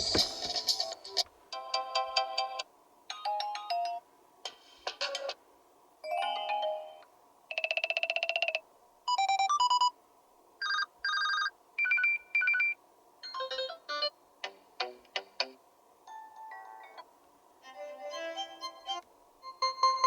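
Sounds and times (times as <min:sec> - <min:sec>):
smartphone ringtone: 0:06.1 - 0:08.6, 0:10.6 - 0:13.6.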